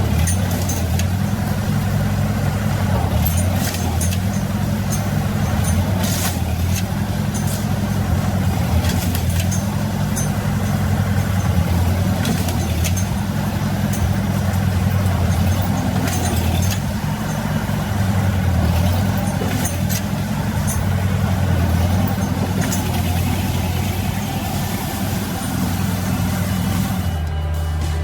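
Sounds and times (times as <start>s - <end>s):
sharp clicks and knocks: 0.0s - 24.4s
tractor engine running: 0.0s - 28.0s.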